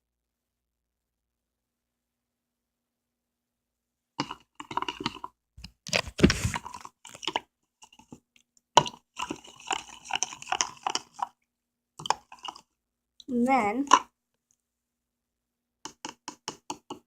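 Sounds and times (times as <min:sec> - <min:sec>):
spoon and containers clicking: 0:04.2 - 0:05.7, 0:08.8 - 0:11.4, 0:12.0 - 0:12.7, 0:13.8 - 0:14.1, 0:15.9 - 0:17.0.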